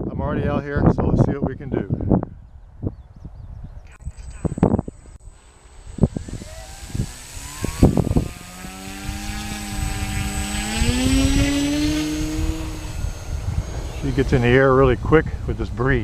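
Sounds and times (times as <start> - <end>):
wind buffeting microphone: 0.0 - 16.0
electric motor and propeller whine: 3.9 - 15.8.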